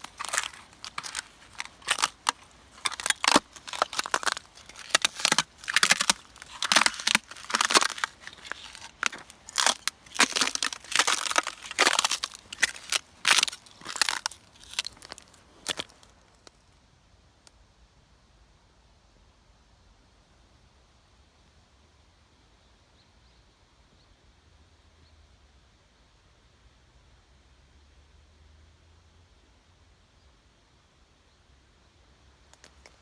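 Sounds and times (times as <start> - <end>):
ice crunching underfoot: 0.0 - 16.5.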